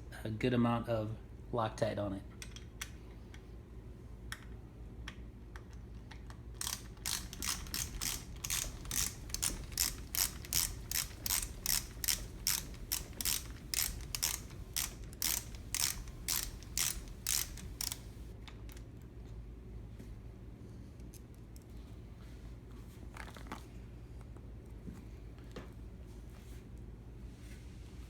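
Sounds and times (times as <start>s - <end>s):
ratchet wrench clicking: 6.6s - 18.3s.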